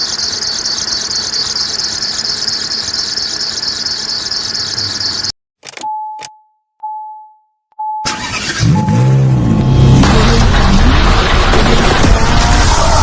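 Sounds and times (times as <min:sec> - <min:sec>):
car engine running: 0:00.0 - 0:05.3
steady tone: 0:00.0 - 0:05.3
high chirp from belt drive: 0:00.0 - 0:05.4.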